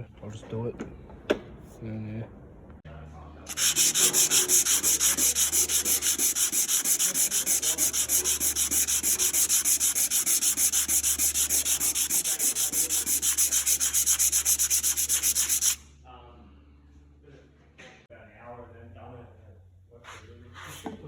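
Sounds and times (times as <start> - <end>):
scratchy sanding strokes: 3.5 - 15.8.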